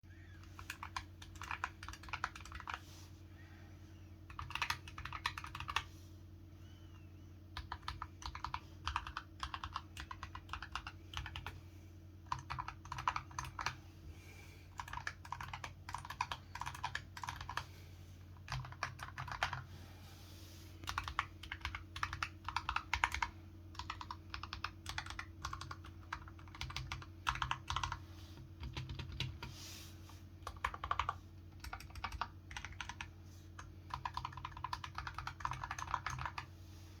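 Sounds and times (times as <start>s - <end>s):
steady low hum: 0.1s - 37.0s
keyboard typing: 0.3s - 2.8s, 4.3s - 5.9s, 7.6s - 11.6s, 12.2s - 13.8s, 14.7s - 17.7s, 18.4s - 19.7s, 20.8s - 29.5s, 30.4s - 36.5s.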